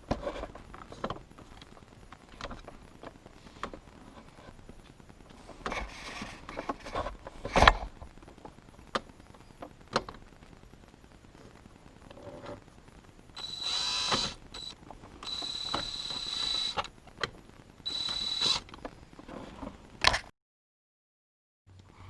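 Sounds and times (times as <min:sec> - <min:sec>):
electric drill whining: 0:13.4 - 0:16.9, 0:17.8 - 0:18.7.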